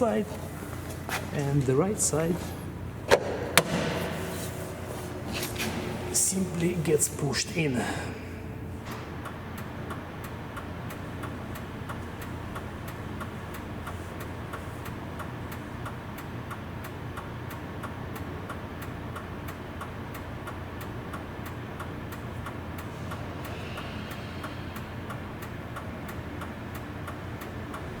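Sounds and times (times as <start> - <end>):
low steady hum: 0.0 - 28.0
turn signal flasher ticking: 8.4 - 28.0.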